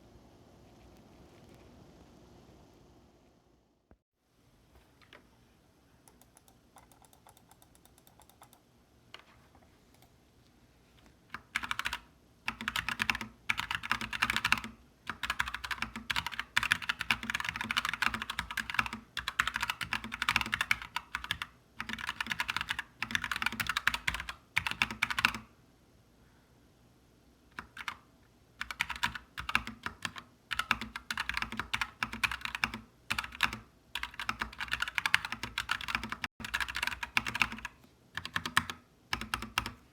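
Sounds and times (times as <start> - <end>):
mechanical keyboard typing: 6.1 - 8.6, 11.3 - 25.4, 27.6 - 28.0, 28.6 - 39.8.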